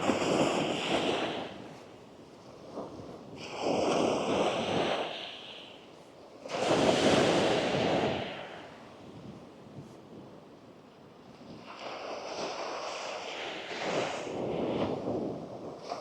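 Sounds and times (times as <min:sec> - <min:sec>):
waves washing up sand: 0:06.5 - 0:08.8.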